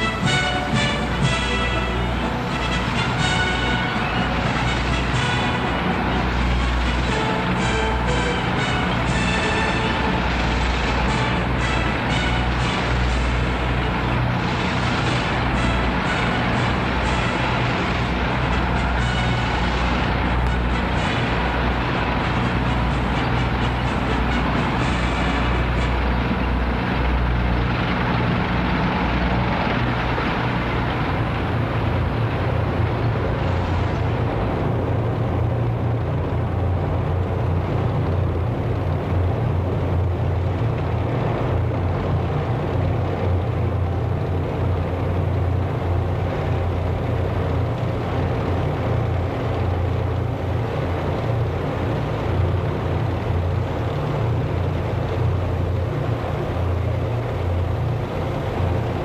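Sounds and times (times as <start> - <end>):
military vehicle engines droning: 0.0 - 59.0.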